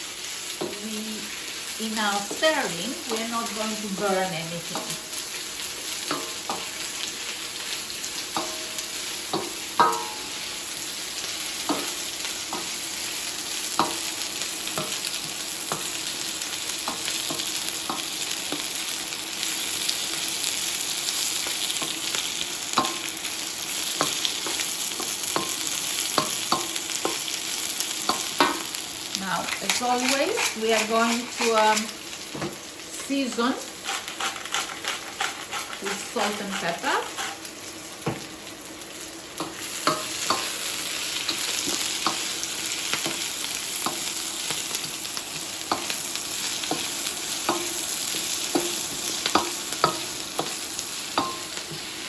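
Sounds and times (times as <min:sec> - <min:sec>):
vegetables sizzling in oil: 0:00.0 - 0:52.0
utensil knocking and scraping pan: 0:29.4 - 0:32.6, 0:33.8 - 0:37.4.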